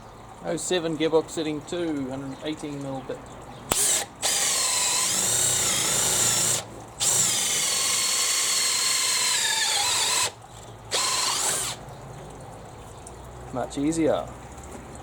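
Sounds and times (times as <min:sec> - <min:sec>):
cordless drill motor whining: 0:03.7 - 0:11.8.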